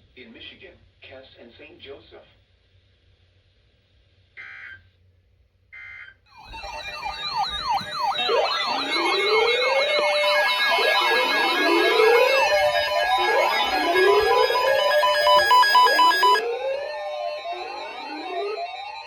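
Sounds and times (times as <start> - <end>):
emergency sirens wailing and yelping: 6.4 - 19.0
buzzy data bursts: 6.6 - 19.0.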